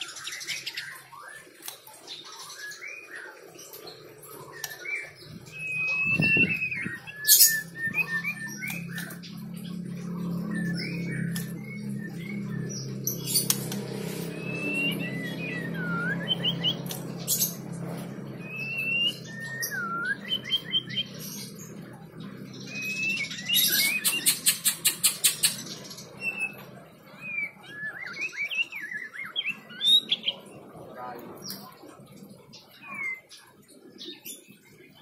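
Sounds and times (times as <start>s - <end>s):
bird whistling song: 0.0s - 30.5s, 32.6s - 34.5s
low steady hum: 3.6s - 24.3s.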